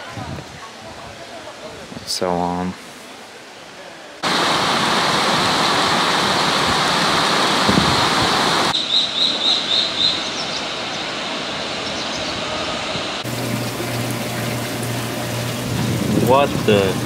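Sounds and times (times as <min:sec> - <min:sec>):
rushing water: 0:04.2 - 0:17.0
bird chirping: 0:08.7 - 0:11.1, 0:11.8 - 0:12.8.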